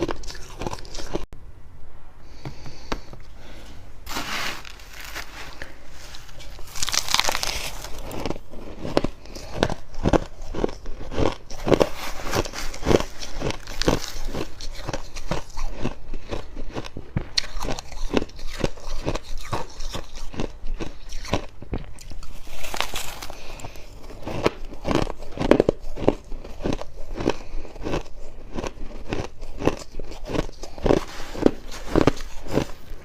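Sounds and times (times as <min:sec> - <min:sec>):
person chewing crunchy frost: 0:00.0 - 0:01.3, 0:04.1 - 0:33.0.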